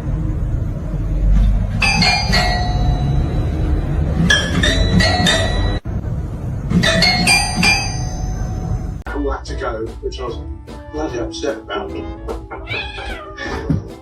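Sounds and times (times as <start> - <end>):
steady low rumble: 0.0 - 10.2
bell-like chimes: 1.8 - 5.8.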